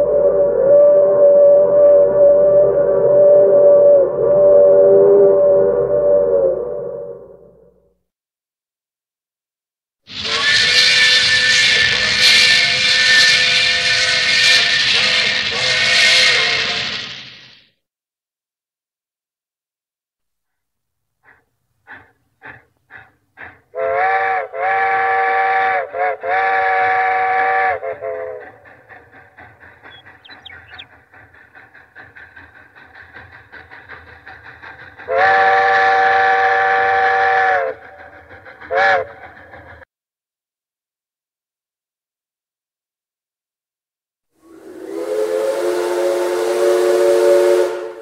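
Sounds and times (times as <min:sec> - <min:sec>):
steam locomotive whistle: 0:00.0 - 0:07.8, 0:10.1 - 0:17.6, 0:23.8 - 0:30.9, 0:35.0 - 0:39.4, 0:44.4 - 0:48.0
steam locomotive chuffing: 0:10.1 - 0:17.7, 0:21.2 - 0:39.9, 0:44.4 - 0:48.0.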